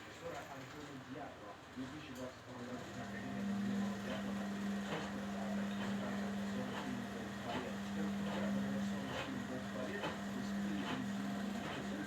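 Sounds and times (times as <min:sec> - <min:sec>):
washing machine humming: 0:02.9 - 0:12.0.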